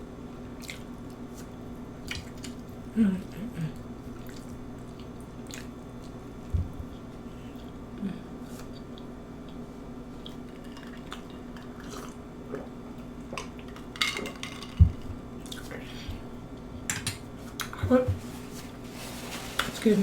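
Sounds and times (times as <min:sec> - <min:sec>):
steady low hum: 0:00.0 - 0:20.0
person chewing: 0:00.6 - 0:02.7, 0:04.1 - 0:06.3, 0:08.4 - 0:12.8.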